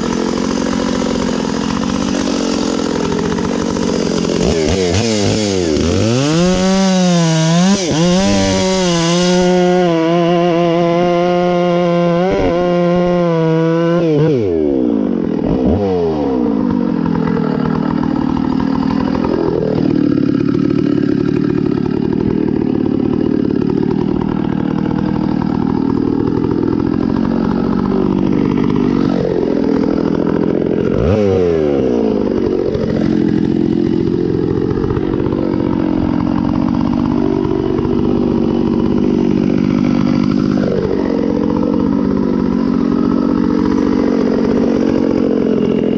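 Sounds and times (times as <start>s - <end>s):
chainsaw cutting wood: 0.0s - 45.9s.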